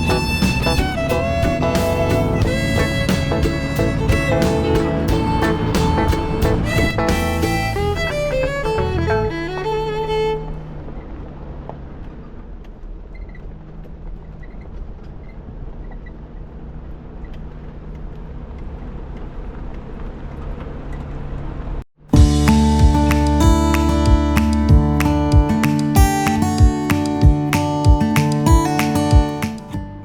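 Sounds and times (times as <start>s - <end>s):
guitar music: 0.0s - 10.2s, 22.2s - 30.0s
vehicle engine hum: 0.0s - 25.4s
rumbling road noise: 0.0s - 29.5s.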